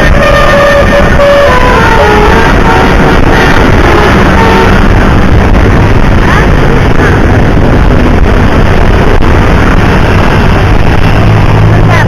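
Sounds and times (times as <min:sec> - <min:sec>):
vehicle engine hum and road hiss: 0:00.0 - 0:12.0
wind on microphone: 0:00.0 - 0:12.0.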